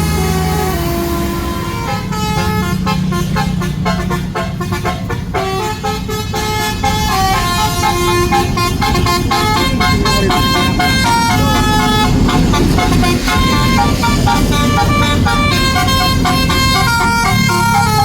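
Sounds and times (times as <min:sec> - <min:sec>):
musical air horn tune: 0:00.0 - 0:18.0
low rumble: 0:01.0 - 0:17.6.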